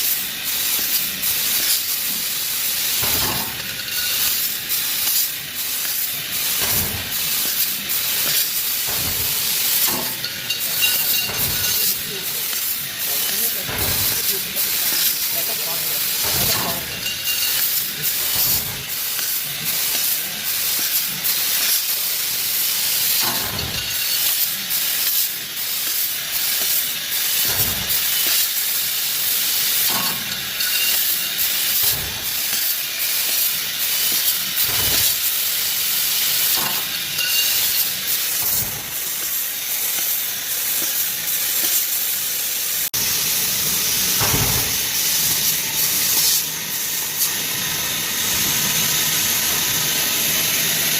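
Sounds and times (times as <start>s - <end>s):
laser cutting head hiss: 0.0s - 50.9s
dull knocks of machine: 6.6s - 7.2s, 8.3s - 10.2s, 13.7s - 14.4s, 27.4s - 28.4s, 44.2s - 44.8s.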